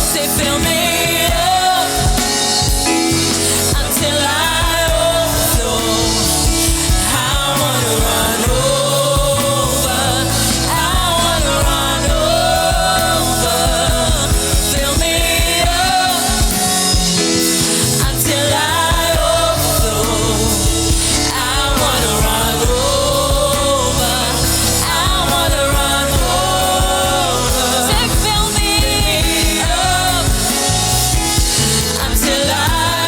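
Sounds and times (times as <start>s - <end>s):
band with bass and drums: 0.0s - 33.0s.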